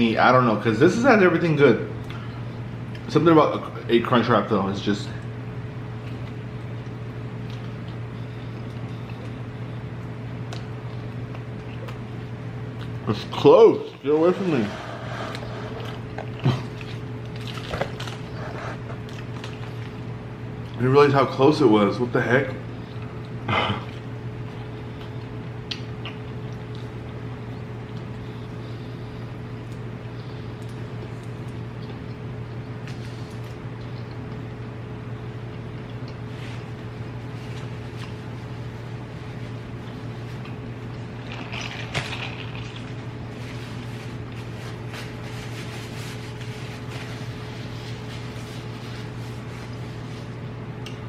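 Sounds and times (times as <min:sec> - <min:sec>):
steady low hum: 0:00.0 - 0:51.0
chewing food: 0:05.9 - 0:13.1, 0:15.3 - 0:20.8, 0:22.8 - 0:28.7, 0:29.5 - 0:34.8, 0:35.4 - 0:36.8.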